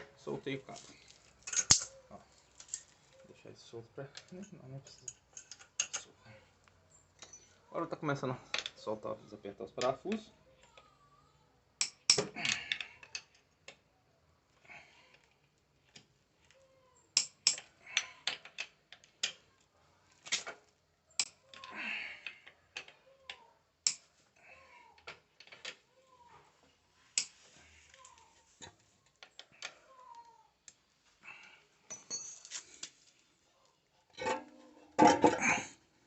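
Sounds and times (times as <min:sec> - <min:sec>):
hand tools clicking on metal: 0:01.4 - 0:02.0, 0:11.8 - 0:13.8, 0:17.1 - 0:19.5, 0:21.2 - 0:24.1, 0:27.2 - 0:27.4.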